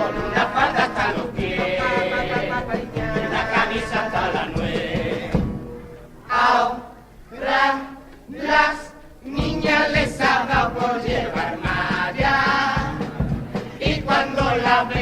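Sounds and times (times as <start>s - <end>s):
steady drum beat: 0.0s - 6.0s, 9.3s - 15.0s
group singing in unison: 0.0s - 15.0s.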